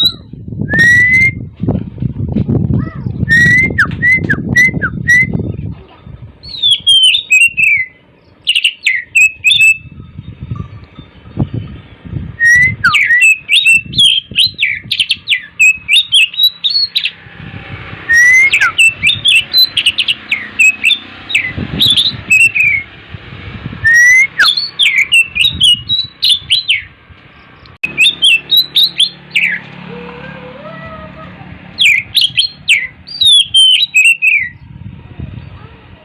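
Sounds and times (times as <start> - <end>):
songbird singing whistles: 0.0 - 1.4, 3.3 - 5.4, 6.4 - 17.2, 18.1 - 22.9, 23.8 - 26.9, 27.8 - 29.7, 31.8 - 34.7.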